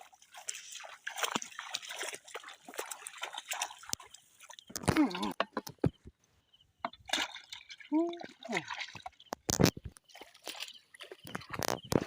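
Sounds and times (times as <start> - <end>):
hands splashing in pond water: 0.0 - 5.8, 6.9 - 12.0
water dripping: 0.0 - 6.0, 6.8 - 12.0
person calling out: 4.9 - 5.4, 7.9 - 8.7.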